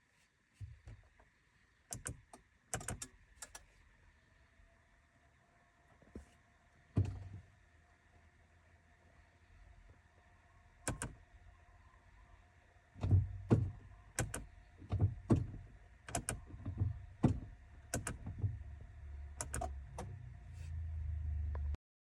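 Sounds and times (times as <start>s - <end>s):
sharp clicks and knocks: 13.0s - 20.2s.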